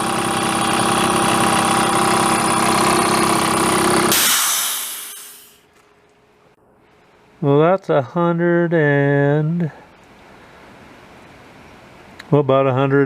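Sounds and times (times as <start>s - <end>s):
air compressor running: 0.0s - 5.6s
short hiss of air: 4.1s - 5.6s.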